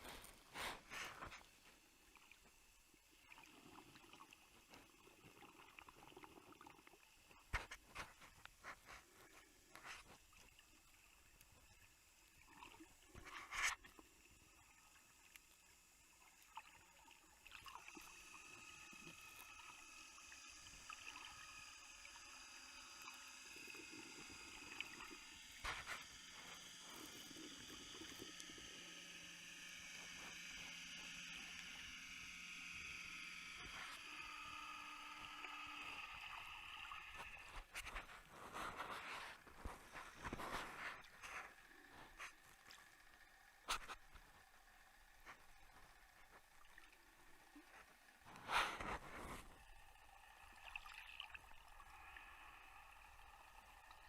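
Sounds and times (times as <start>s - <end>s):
faint water sounds: 0.0s - 54.0s
hiss with high whine: 7.4s - 42.3s.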